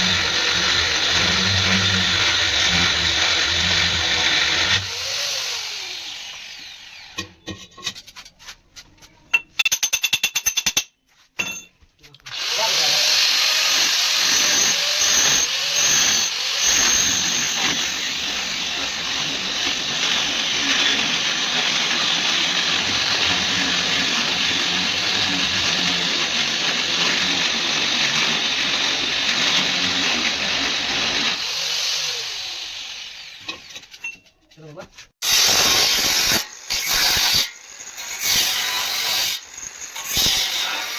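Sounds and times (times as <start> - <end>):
power tool hissing on steel: 35.2 - 40.9.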